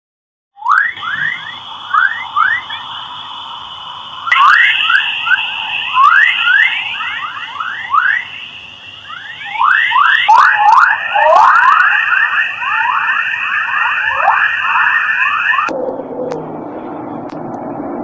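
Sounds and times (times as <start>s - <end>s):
quick rising chirps: 0.6s - 15.7s
steady high whistle: 0.6s - 15.8s.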